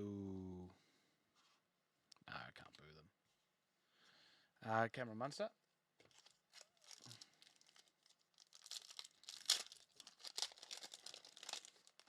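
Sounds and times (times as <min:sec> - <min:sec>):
foil wrapper crinkling and tearing: 0:06.0 - 0:12.0.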